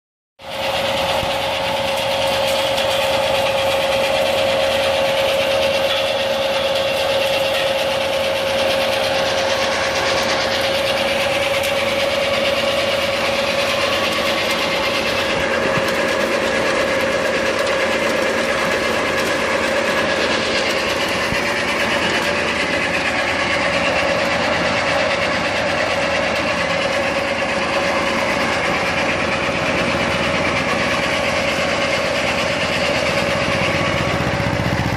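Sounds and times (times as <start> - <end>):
harvesting machine engine running: 0.4 - 34.9.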